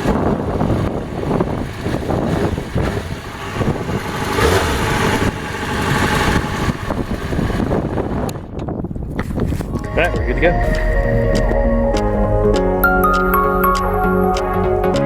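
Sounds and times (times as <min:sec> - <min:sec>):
motorcycle engine idling: 0:00.0 - 0:08.3.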